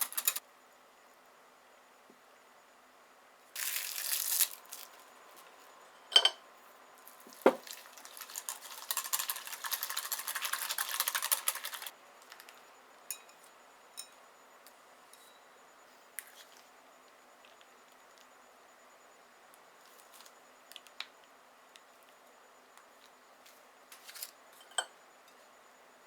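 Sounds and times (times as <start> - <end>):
plastic wrap crinkling: 0.0 - 0.4, 3.6 - 5.6, 7.0 - 12.5
whisk whisking in bowl: 0.0 - 0.4, 7.4 - 11.9
knocks against bowl: 7.4 - 7.6.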